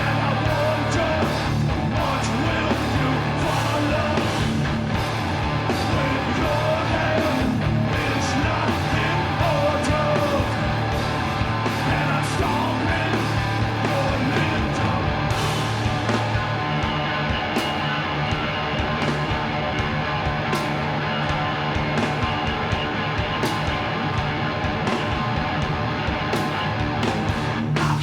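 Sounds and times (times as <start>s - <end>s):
distorted electric guitars: 0.0s - 28.0s
pounding rhythm section: 0.0s - 28.0s.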